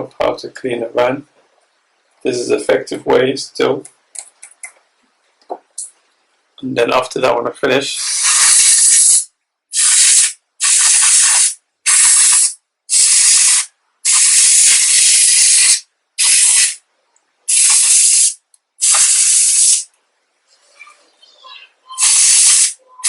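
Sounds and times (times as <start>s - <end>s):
compressed air spray bursts: 8.0s - 16.8s, 17.5s - 19.9s, 22.0s - 22.8s.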